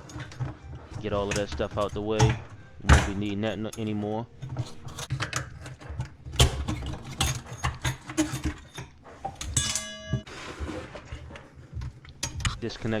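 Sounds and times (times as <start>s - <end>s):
metal and plastic parts rattling: 0.0s - 13.0s
metal part ringing: 9.5s - 10.3s.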